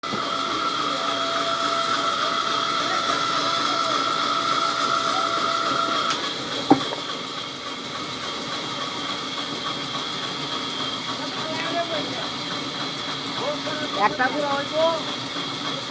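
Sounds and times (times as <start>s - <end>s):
sawmill machinery whining: 0.0s - 15.9s
sharp knock: 6.7s - 7.0s.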